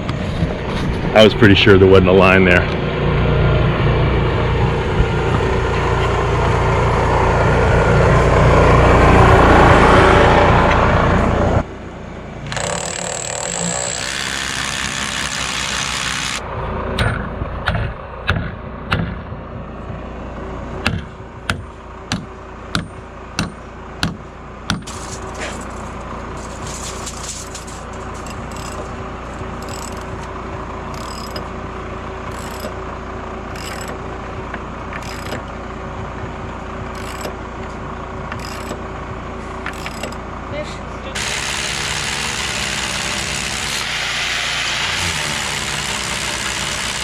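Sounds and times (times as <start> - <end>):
hammer drill boring into concrete: 12.5 - 16.4, 28.2 - 28.8, 29.6 - 30.1, 33.5 - 33.9, 35.0 - 35.4, 38.4 - 38.8, 41.2 - 47.0
sharp knocks: 17.0 - 19.2, 20.8 - 24.9.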